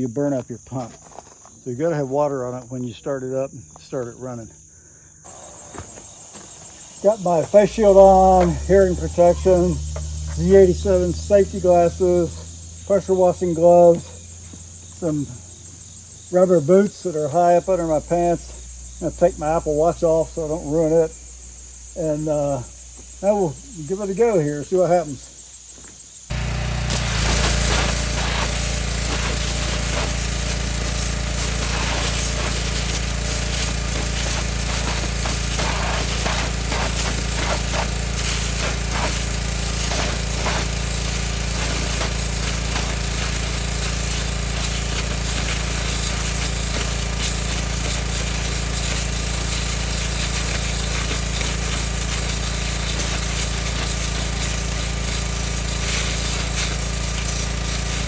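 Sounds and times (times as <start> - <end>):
high-pressure water jet hissing: 5.2 - 15.4, 26.3 - 58.0
pressure washer engine: 5.3 - 18.5, 26.3 - 58.0
crackling spatter: 26.3 - 54.4.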